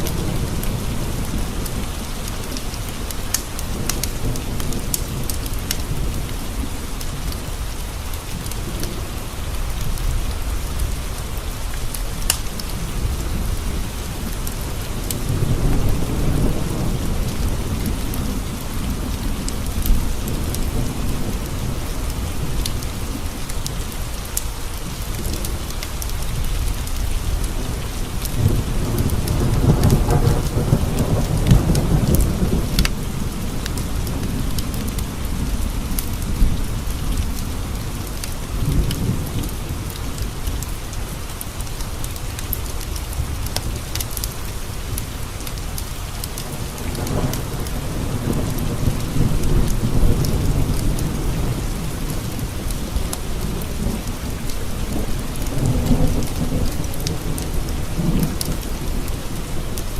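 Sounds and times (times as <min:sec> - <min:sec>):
steady rain: 0:00.0 - 0:59.9
sharp crackles: 0:01.5 - 0:15.8
low thunder rolls: 0:26.3 - 0:40.6, 0:46.4 - 0:59.9.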